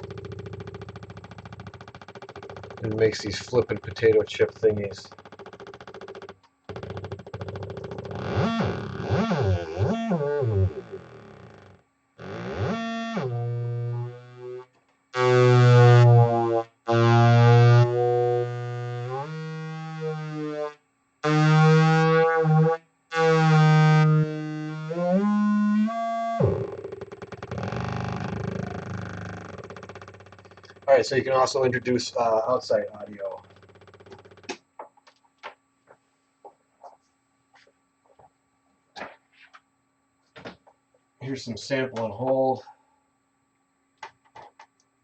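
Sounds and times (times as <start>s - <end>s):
synthesizer buzzing: 0.0s - 34.6s.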